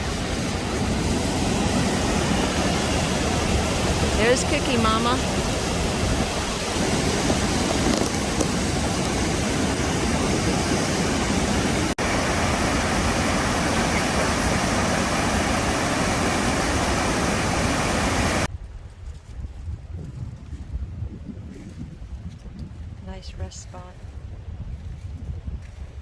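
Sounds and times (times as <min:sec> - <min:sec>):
waterfall rushing: 0:00.0 - 0:18.5.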